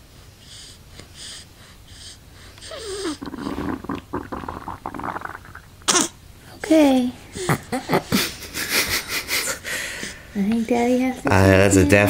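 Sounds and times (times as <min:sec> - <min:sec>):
baby breathing puffs: 0:00.4 - 0:03.9, 0:09.2 - 0:11.1
baby grunting: 0:02.6 - 0:06.2.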